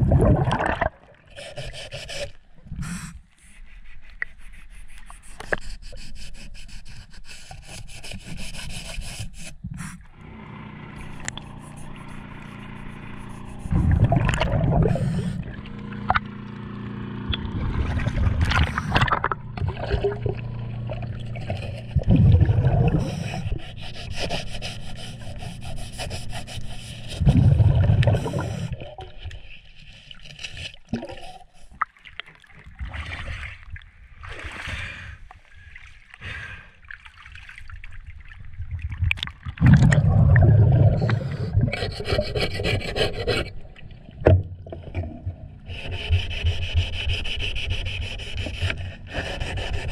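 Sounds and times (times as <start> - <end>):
scraper rasping underwater: 0.0 - 10.3, 11.0 - 16.3, 17.3 - 31.9, 39.5 - 49.9
low rumbling bursts: 11.0 - 23.7.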